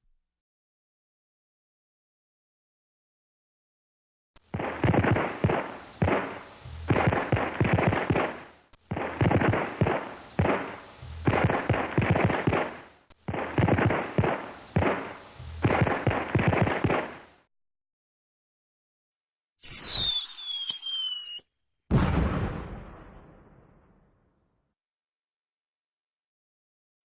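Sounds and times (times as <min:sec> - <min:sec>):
firecrackers popping and banging: 0:04.5 - 0:17.4.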